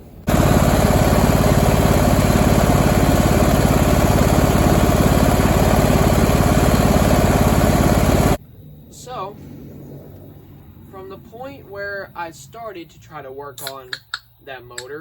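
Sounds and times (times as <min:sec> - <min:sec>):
small engine running: 0:00.0 - 0:08.4.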